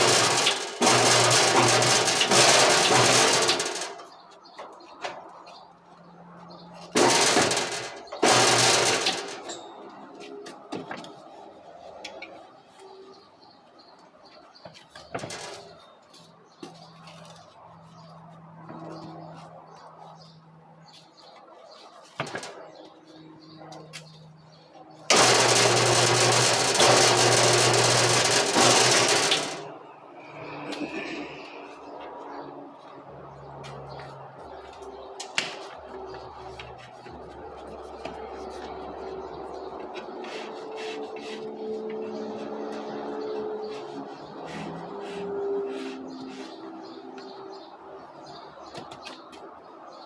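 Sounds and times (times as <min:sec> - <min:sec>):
electric workshop tool running: 0:25.1 - 0:29.6.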